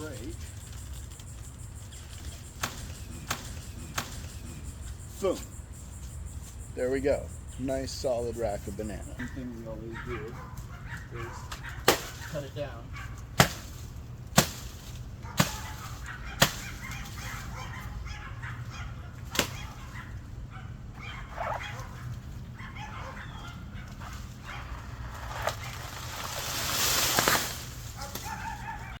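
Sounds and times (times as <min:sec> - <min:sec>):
chopping into tree trunk: 0:02.6 - 0:04.3, 0:11.5 - 0:12.3, 0:13.4 - 0:17.1, 0:19.3 - 0:19.7, 0:25.3 - 0:28.4.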